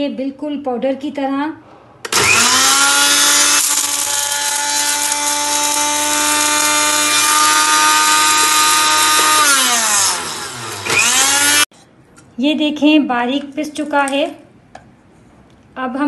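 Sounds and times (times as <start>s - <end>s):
electric spice grinder whining: 2.1s - 11.7s.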